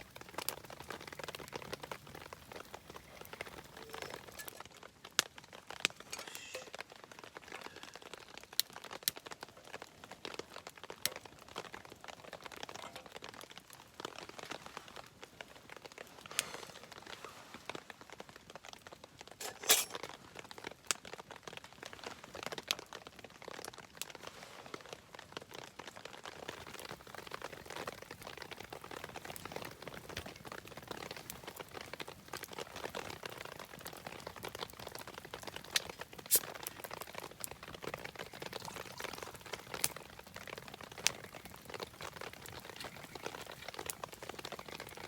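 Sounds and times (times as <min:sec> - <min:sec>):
sharp fire pops: 0:00.0 - 0:04.6, 0:26.5 - 0:45.0
campfire crackling: 0:00.0 - 0:17.1, 0:26.3 - 0:45.0
rain pattering: 0:00.0 - 0:24.2, 0:25.1 - 0:45.0.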